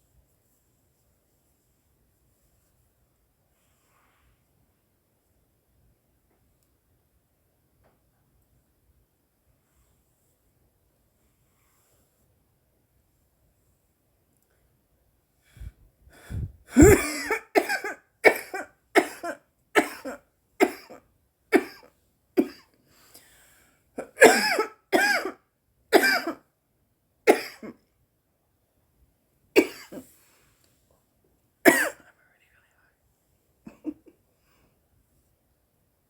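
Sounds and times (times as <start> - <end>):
woman coughing hard: 16.7 - 22.7, 24.0 - 26.4, 27.3 - 27.8, 29.6 - 30.0, 31.6 - 32.1.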